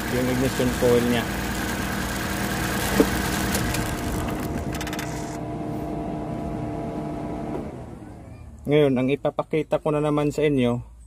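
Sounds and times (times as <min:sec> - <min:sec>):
car engine idling: 0:00.0 - 0:06.5.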